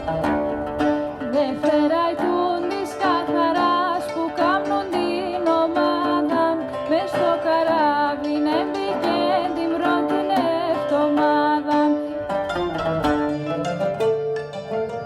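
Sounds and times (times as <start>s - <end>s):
plucked string instrument: 0.0s - 15.0s
person singing: 1.2s - 12.1s.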